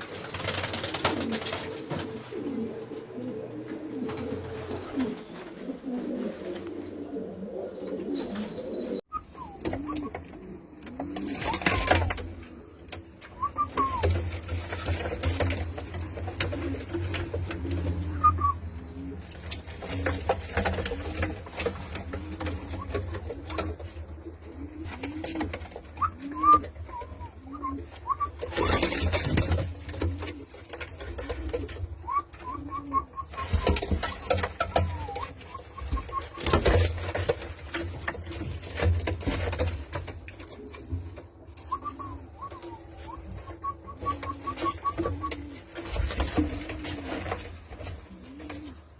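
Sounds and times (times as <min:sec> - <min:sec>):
pigeons cooing: 0:00.0 - 0:48.9.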